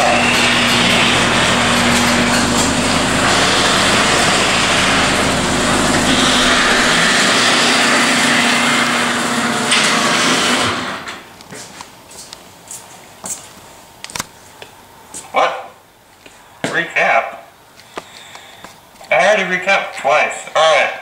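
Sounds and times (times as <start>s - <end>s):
garage door motor hum: 0.0s - 11.6s.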